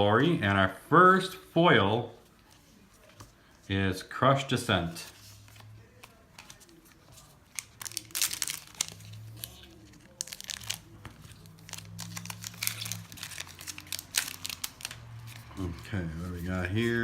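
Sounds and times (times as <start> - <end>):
foil wrapper tearing and crumpling: 7.5 - 15.3.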